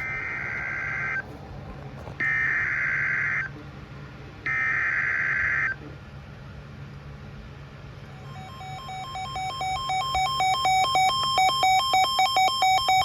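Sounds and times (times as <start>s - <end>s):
warbling data tones: 0.0s - 1.2s, 8.2s - 13.0s.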